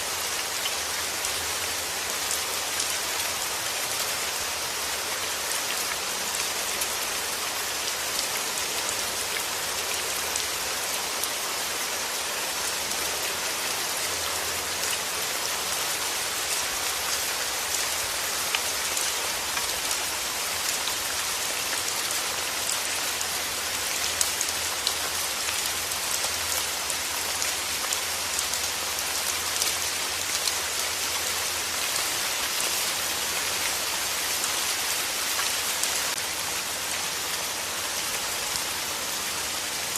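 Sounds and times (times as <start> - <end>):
rain pattering: 0.1 - 39.9.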